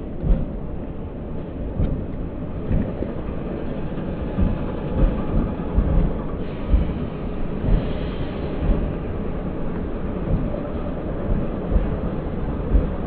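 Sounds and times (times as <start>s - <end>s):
train rumbling past: 0.0s - 13.0s
deep thumps: 0.2s - 0.6s, 11.4s - 13.0s.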